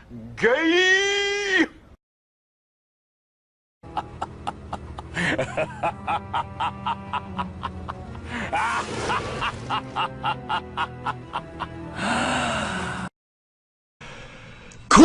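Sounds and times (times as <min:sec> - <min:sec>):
evil laugh: 0:03.9 - 0:11.8.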